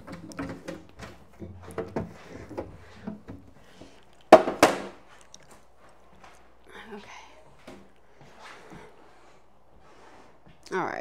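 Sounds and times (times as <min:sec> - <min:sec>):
items knocking and clattering: 0:00.0 - 0:05.6.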